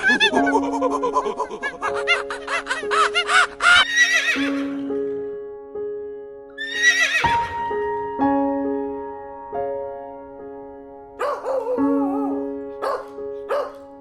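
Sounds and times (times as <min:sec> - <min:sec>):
background music with held notes: 0:00.0 - 0:14.0
horse whinnying: 0:03.7 - 0:04.9, 0:06.6 - 0:07.7.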